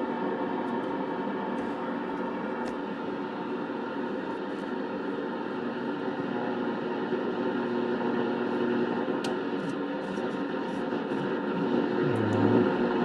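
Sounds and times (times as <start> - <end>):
radio static and hiss: 11.4 - 13.0.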